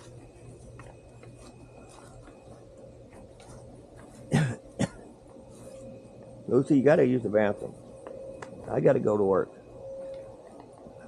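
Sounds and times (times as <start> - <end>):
low steady background: 0.0 - 11.0
short coughs: 4.3 - 5.1.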